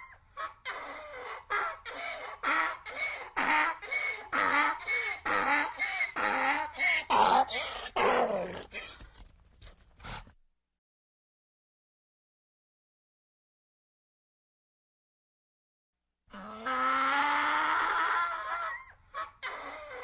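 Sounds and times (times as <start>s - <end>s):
donkey braying: 0.0s - 9.0s.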